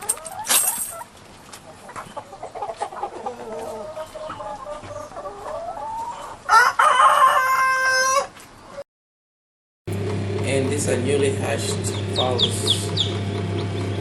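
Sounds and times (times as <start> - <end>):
chickens clucking: 0.0 - 8.8, 11.4 - 14.0
rooster crowing: 6.2 - 8.4.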